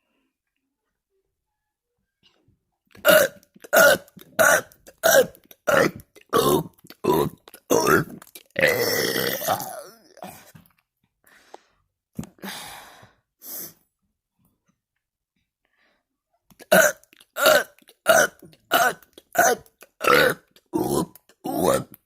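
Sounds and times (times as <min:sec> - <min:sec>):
man burping: 0:03.0 - 0:10.5, 0:16.6 - 0:22.0
faint breaths: 0:11.2 - 0:13.8.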